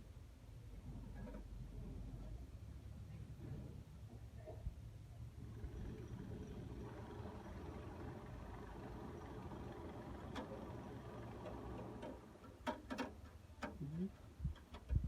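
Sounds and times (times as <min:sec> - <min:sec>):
truck engine running: 0:05.4 - 0:12.2
sharp metallic clicks and knocks: 0:08.9 - 0:15.0.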